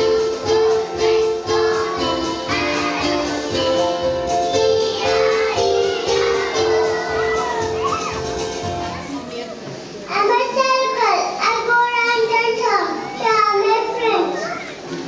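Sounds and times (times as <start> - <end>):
children singing: 0.0 - 8.9
instrumental music: 0.0 - 9.3.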